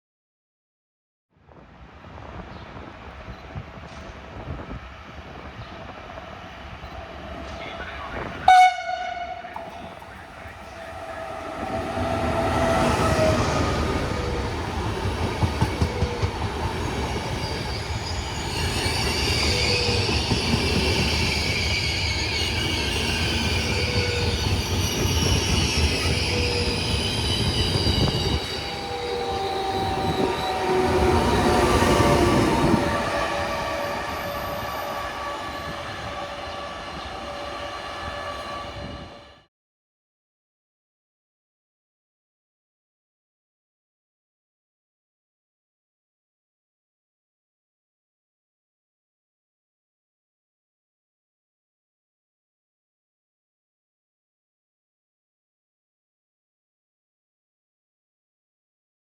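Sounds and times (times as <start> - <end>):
train rumble: 1.6 - 21.5, 22.5 - 39.2
train wheels squealing: 15.7 - 39.3.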